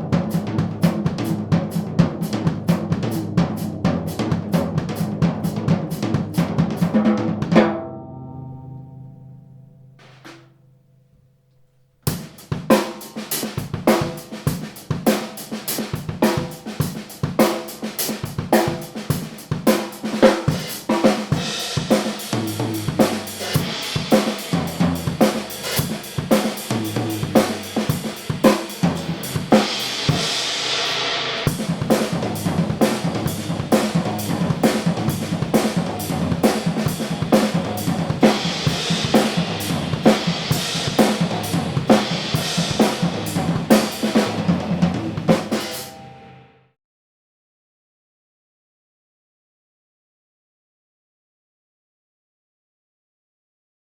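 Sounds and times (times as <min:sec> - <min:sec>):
drum kit playing groove: 0:00.0 - 0:07.8, 0:12.1 - 0:46.2
cymbal crash: 0:21.4 - 0:33.6.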